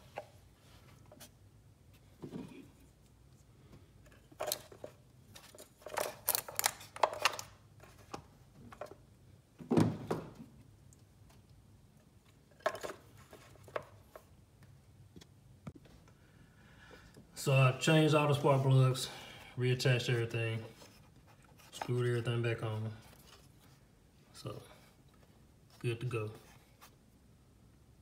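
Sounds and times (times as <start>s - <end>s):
tools clicking and clattering: 4.1s - 7.5s.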